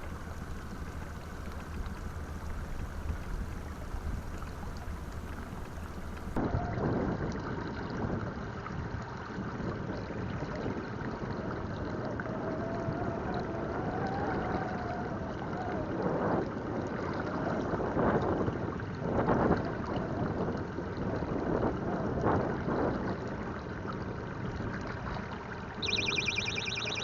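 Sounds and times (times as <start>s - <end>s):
water splashing against boat: 0.0s - 7.6s
wind on microphone: 0.0s - 25.1s
rapid high electronic beeping: 25.8s - 27.0s.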